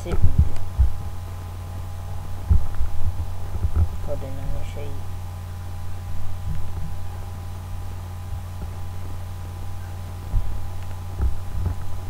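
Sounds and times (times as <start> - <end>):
low hum: 0.0 - 12.0
soft thumps: 10.3 - 12.0.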